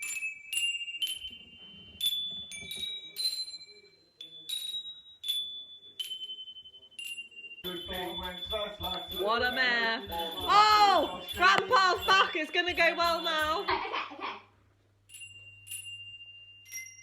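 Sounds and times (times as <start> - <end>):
handbells ringing a melody: 0.0 - 13.8, 15.1 - 17.0.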